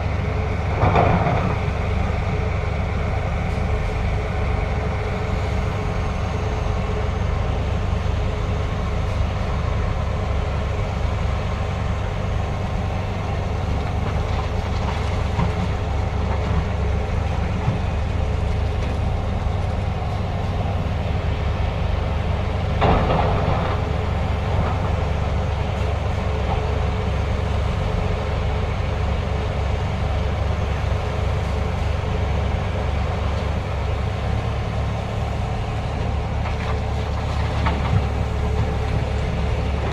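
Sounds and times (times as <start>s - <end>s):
diesel machinery engine droning: 0.0s - 39.9s.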